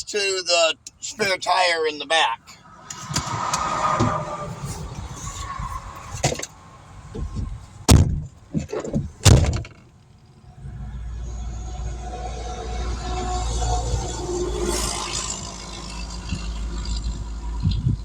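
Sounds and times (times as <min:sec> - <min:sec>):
car door knocks and thuds: 0:07.1 - 0:09.8.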